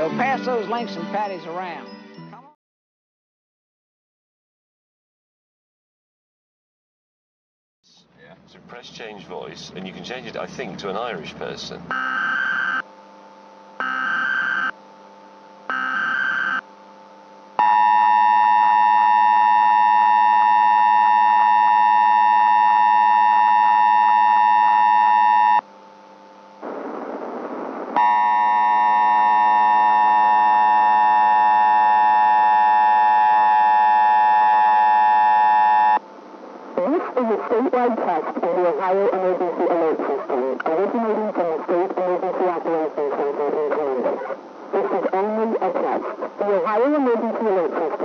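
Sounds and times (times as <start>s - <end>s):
data bursts: 11.4s - 12.9s, 13.7s - 14.8s, 15.6s - 16.7s
burst of noise: 26.6s - 30.2s.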